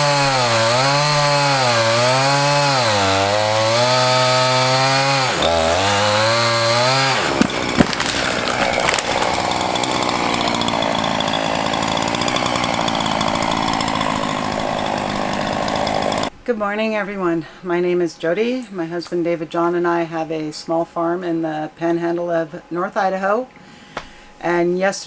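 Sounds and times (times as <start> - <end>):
chainsaw cutting wood: 0.0 - 16.3
sharp knocks: 6.8 - 10.2.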